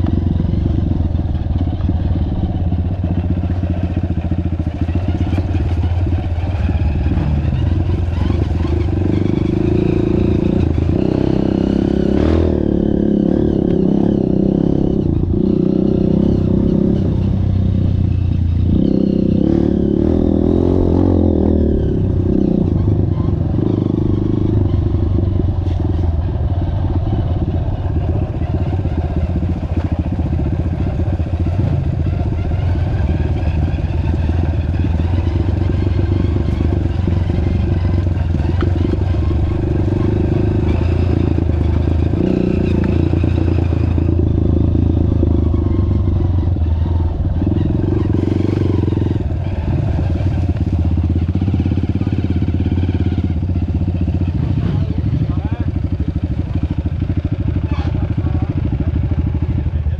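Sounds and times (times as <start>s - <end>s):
off-road vehicle engine running: 0.0s - 59.9s.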